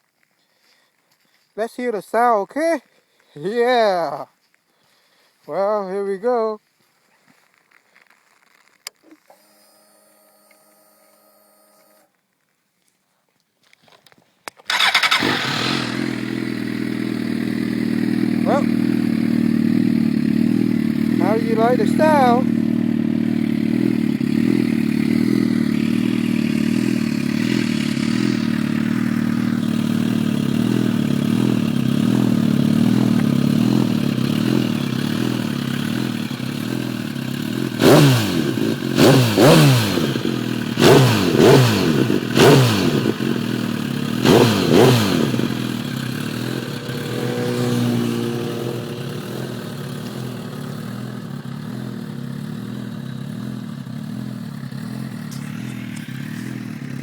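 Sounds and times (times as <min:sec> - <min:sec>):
motorcycle engine idling: 0:14.7 - 0:57.0
motorcycle engine revving: 0:14.7 - 0:57.0.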